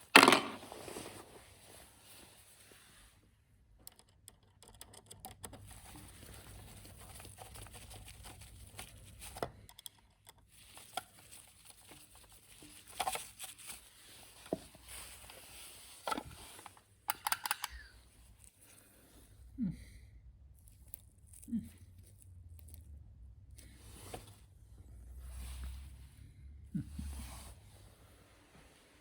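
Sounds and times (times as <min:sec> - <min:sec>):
hands clicking and tapping parts: 0:03.8 - 0:06.4, 0:07.0 - 0:13.8, 0:16.0 - 0:18.5.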